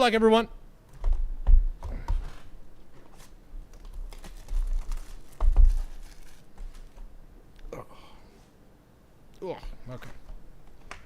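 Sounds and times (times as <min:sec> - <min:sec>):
wrapper crinkling: 0:03.7 - 0:07.0.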